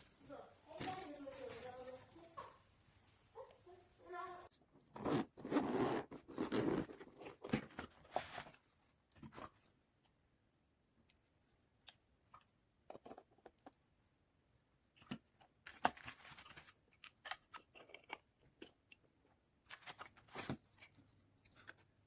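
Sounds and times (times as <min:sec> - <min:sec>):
rustling handling noise: 0:00.0 - 0:10.2, 0:15.0 - 0:22.0.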